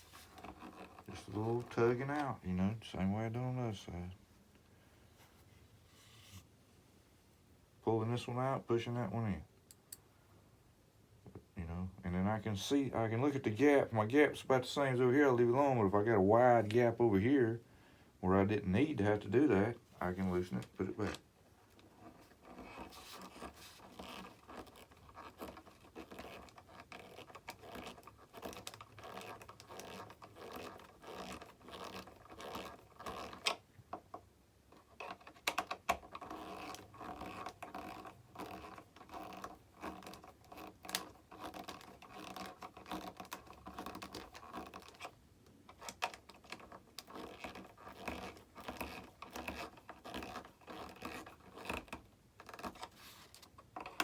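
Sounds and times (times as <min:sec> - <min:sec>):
scratchy handling noise: 0:00.0 - 0:03.6, 0:05.1 - 0:06.6, 0:18.5 - 0:34.1, 0:34.7 - 0:54.0.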